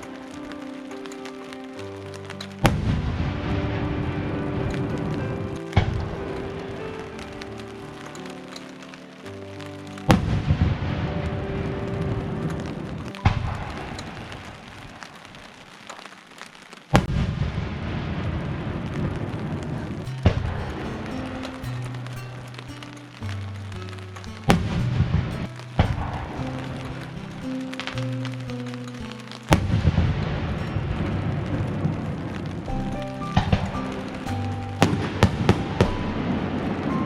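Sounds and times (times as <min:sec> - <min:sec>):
music with held notes: 0:00.0 - 0:14.6, 0:20.0 - 0:37.0
fireworks booming: 0:02.6 - 0:07.6, 0:10.0 - 0:16.1, 0:16.9 - 0:22.2, 0:24.4 - 0:28.7, 0:29.5 - 0:37.0.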